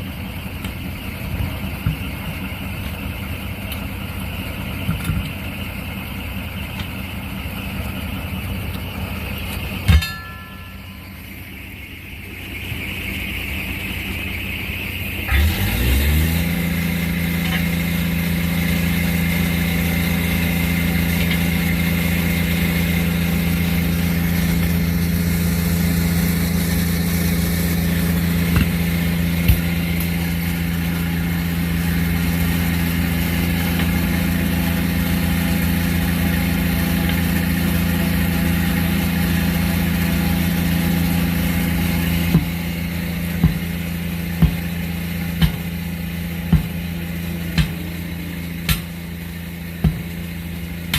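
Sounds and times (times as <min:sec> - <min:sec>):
engine running at raised speed: 0:00.0 - 0:50.9
sharp metallic knocks: 0:09.8 - 0:11.4, 0:43.4 - 0:43.8, 0:44.4 - 0:44.8, 0:45.4 - 0:45.8, 0:46.5 - 0:46.9, 0:47.6 - 0:47.9, 0:48.6 - 0:49.0, 0:49.8 - 0:50.2.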